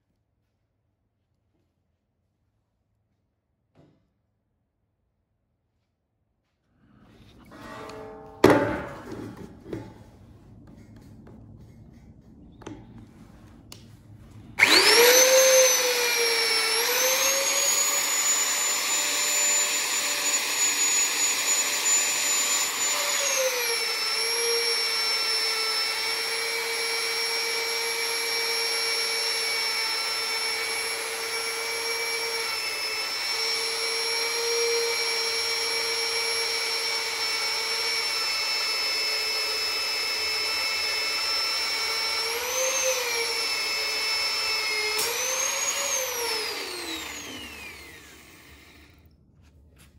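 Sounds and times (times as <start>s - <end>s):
power tool motor whining: 14.6s - 49.1s.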